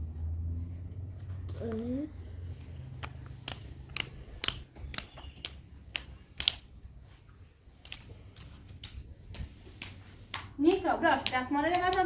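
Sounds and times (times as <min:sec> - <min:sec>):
sharp clicks and taps: 0:03.0 - 0:06.7, 0:07.8 - 0:12.0.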